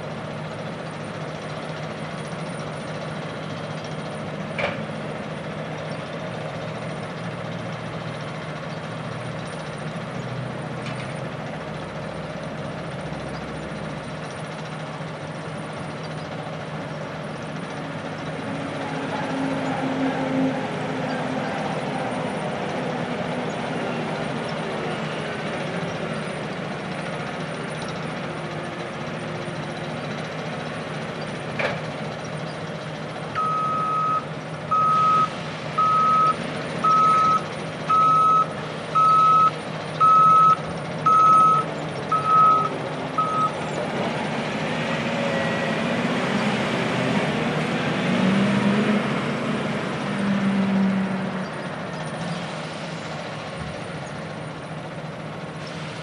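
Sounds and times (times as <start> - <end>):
heavy machinery low drone: 0.0 - 56.0
truck reversing alarm beeps: 32.2 - 43.8
truck engine revving: 32.9 - 56.0.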